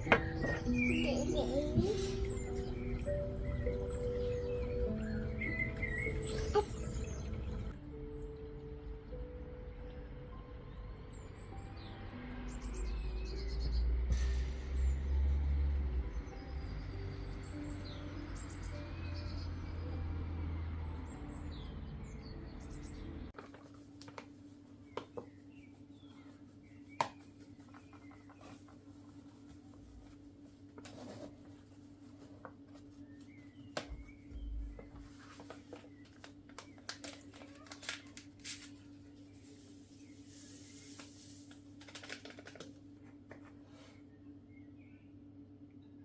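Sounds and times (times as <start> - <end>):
birds chirping: 0.0 - 10.4, 24.6 - 30.5, 31.3 - 38.2.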